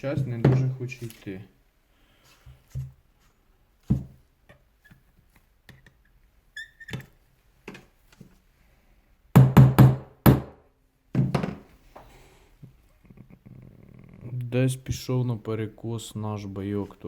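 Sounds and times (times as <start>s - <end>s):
hammer knocking on metal: 9.4s - 10.6s.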